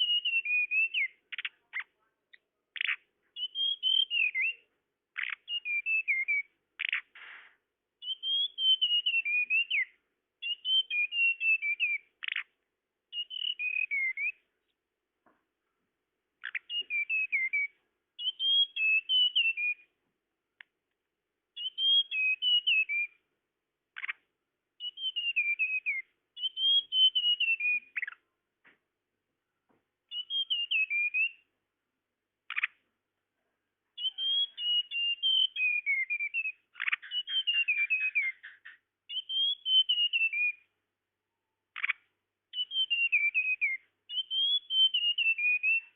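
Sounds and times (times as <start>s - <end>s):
bird whistled phrases: 0.0s - 2.0s, 2.8s - 4.6s, 5.2s - 7.1s, 8.0s - 12.5s, 13.1s - 14.4s, 16.4s - 19.9s, 21.6s - 23.2s, 24.8s - 28.2s, 30.1s - 31.4s, 34.0s - 40.7s, 41.8s - 45.9s.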